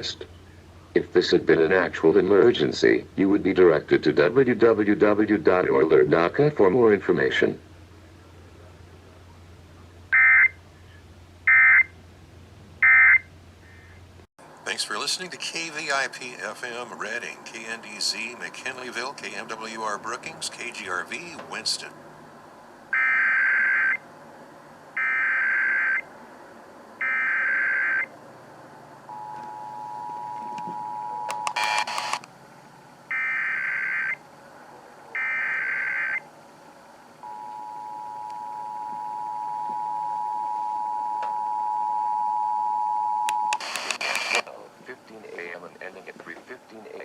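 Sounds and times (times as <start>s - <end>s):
two-tone attention signal: 29.1s - 31.5s, 37.2s - 43.6s
static crackle: 31.3s - 32.3s, 43.5s - 47.0s.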